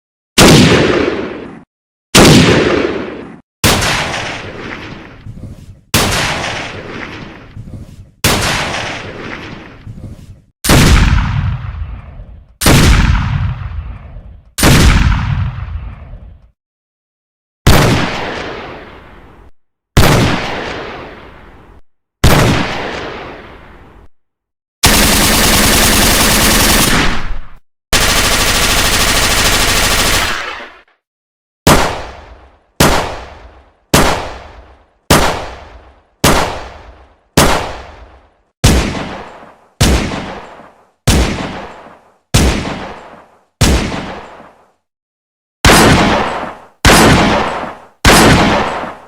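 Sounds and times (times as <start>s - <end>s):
single gunshots with echo: 0.4s - 1.6s, 2.2s - 5.2s, 6.0s - 7.4s, 8.2s - 9.8s, 10.7s - 16.1s, 31.7s - 44.6s, 45.6s - 49.0s
automatic gunfire bursts: 24.8s - 27.1s, 28.0s - 30.7s.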